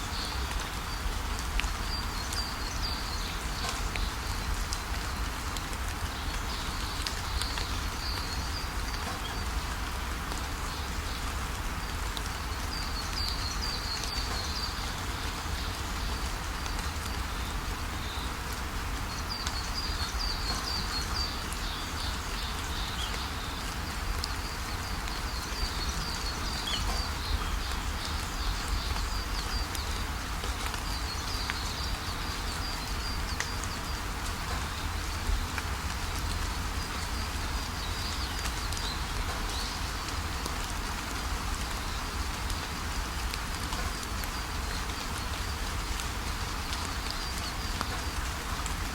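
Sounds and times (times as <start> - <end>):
small birds chirping: 10.3 - 18.4, 19.0 - 43.1.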